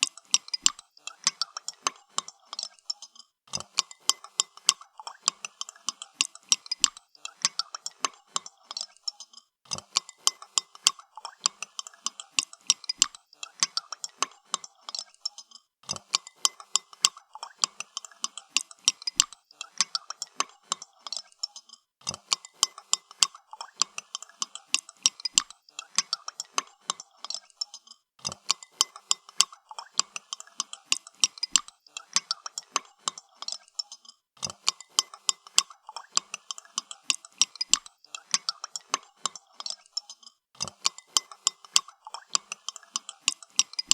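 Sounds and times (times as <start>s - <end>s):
spoon clinking in a coffee cup: 16.2s - 43.9s.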